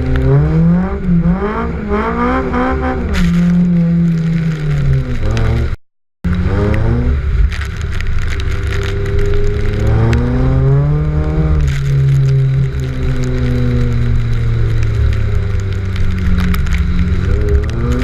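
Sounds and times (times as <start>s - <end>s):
car engine revving hard: 0.0s - 4.2s.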